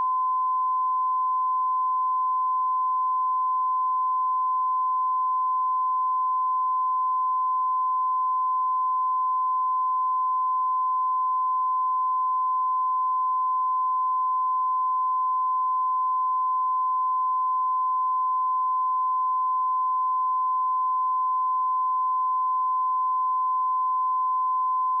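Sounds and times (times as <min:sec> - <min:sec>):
sine wave test tone: 0:00.0 - 0:25.0.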